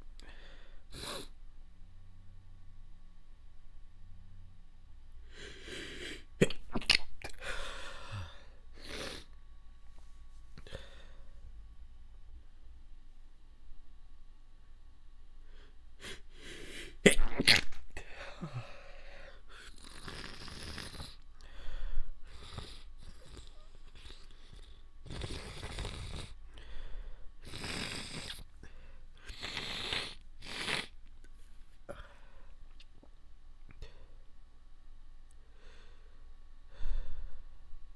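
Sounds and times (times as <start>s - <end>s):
person breathing: 0.2s - 1.4s, 5.2s - 6.3s, 7.3s - 9.3s, 10.6s - 11.4s, 15.4s - 17.0s, 18.0s - 19.8s, 21.1s - 24.8s, 25.6s - 27.5s, 28.2s - 30.1s, 31.4s - 32.6s, 35.4s - 37.8s
person stifling sneezes: 17.0s - 18.6s.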